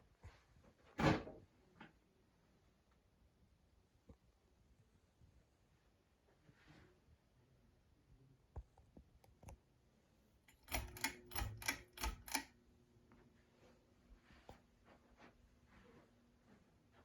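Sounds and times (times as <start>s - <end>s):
ceiling fan mechanical clicks: 10.5s - 12.6s.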